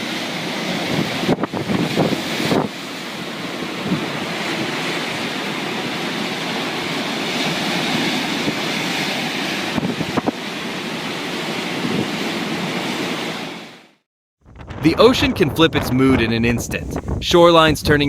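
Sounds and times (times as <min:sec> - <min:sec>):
ocean surf rushing: 0:00.0 - 0:13.9, 0:14.5 - 0:18.0
wind buffeting microphone: 0:00.9 - 0:02.8, 0:14.4 - 0:18.0.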